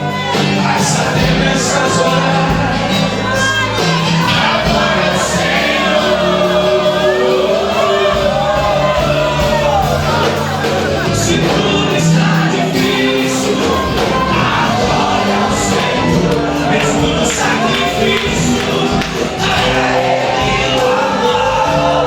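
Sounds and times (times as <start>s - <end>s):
band playing worship music: 0.0s - 22.0s
person singing: 0.0s - 22.0s.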